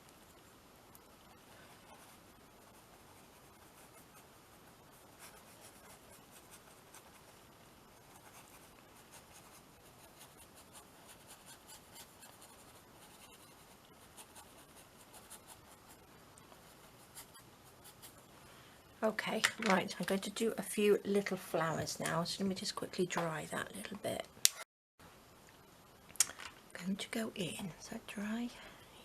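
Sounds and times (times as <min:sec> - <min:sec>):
colouring tool scratching on paper: 0:08.0 - 0:16.0.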